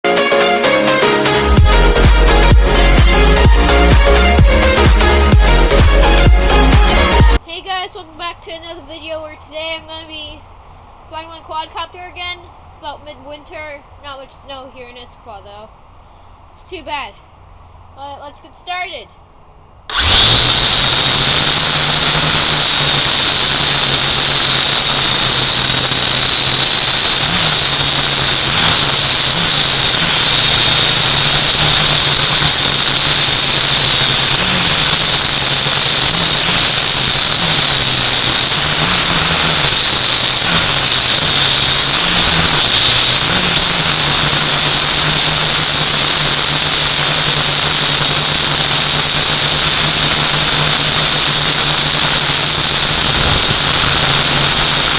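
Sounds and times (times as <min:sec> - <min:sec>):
drone propellers whining: 0:19.9 - 0:54.9.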